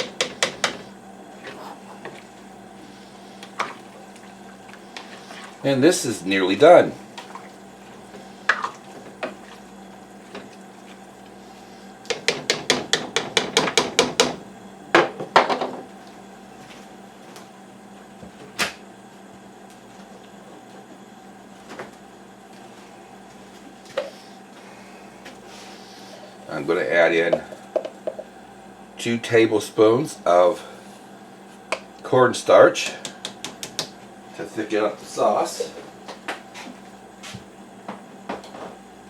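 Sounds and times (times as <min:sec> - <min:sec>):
utensil knocking on cooking pot: 0:00.0 - 0:00.8, 0:12.1 - 0:14.4, 0:27.3 - 0:28.3.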